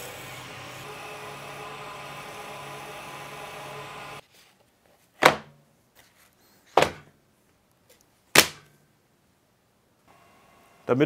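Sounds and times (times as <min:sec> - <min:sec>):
electric drill motor running: 0:00.0 - 0:04.2.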